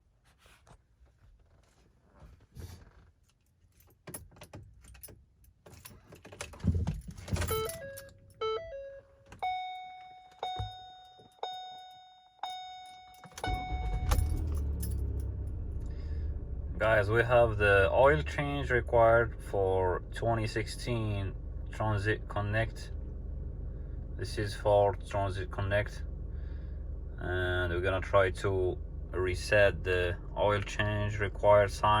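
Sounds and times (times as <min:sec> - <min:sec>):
car keys jangling: 0:03.4 - 0:08.4, 0:09.3 - 0:15.5
dashboard chimes: 0:07.5 - 0:14.4
electronic dashboard tones: 0:07.5 - 0:14.7
car engine running: 0:13.4 - 0:32.0.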